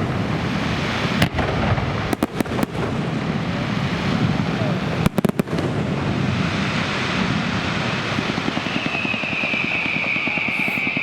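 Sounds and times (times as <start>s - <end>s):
fireworks bangs: 0.0s - 11.0s
fireworks rushing crackling: 0.0s - 11.0s
high whistle-like tone: 8.6s - 11.0s.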